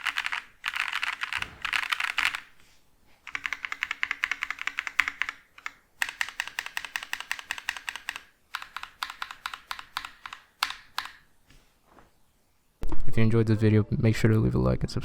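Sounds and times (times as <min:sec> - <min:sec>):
mechanical keyboard typing: 0:00.0 - 0:02.5, 0:03.2 - 0:11.2.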